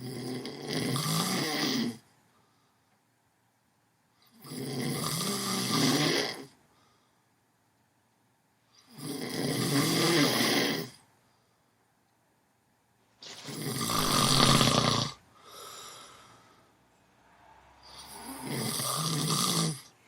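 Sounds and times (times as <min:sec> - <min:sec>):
person snoring: 0:00.0 - 0:02.0, 0:04.3 - 0:06.5, 0:08.8 - 0:11.0, 0:13.2 - 0:16.7, 0:17.8 - 0:19.9.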